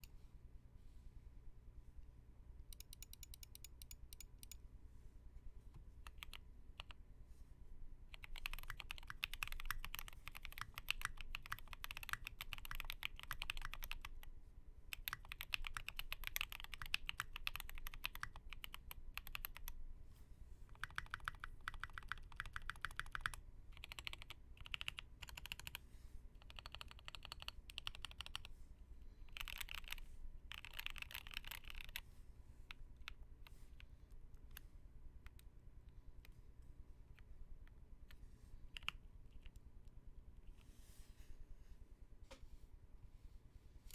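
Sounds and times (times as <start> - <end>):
mechanical keyboard typing: 2.7 - 4.6, 6.1 - 7.0, 8.1 - 14.2, 14.9 - 19.8, 20.7 - 25.8, 26.4 - 28.5, 29.3 - 32.0, 38.8 - 39.6.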